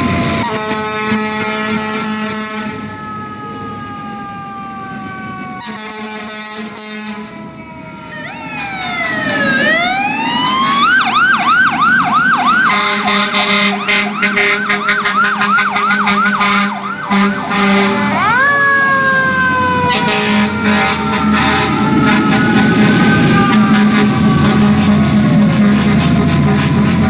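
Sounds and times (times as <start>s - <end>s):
fire engine siren: 0.0s - 27.0s
low steady horn tone: 0.4s - 2.9s, 5.6s - 7.3s, 12.7s - 18.1s, 19.9s - 22.6s.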